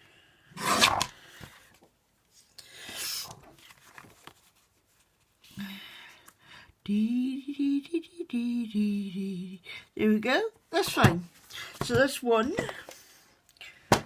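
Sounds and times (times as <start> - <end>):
paper cutter scraping slide: 0.6 - 1.2
soft paper rustles: 1.4 - 5.6.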